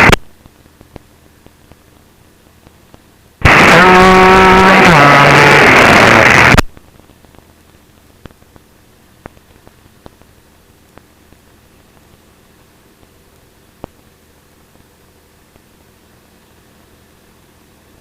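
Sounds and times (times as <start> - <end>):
faint clicks on radio line: 0.0 - 1.8, 2.4 - 3.1, 6.5 - 12.2, 13.0 - 14.1
radio noise burst with tones: 0.0 - 16.9.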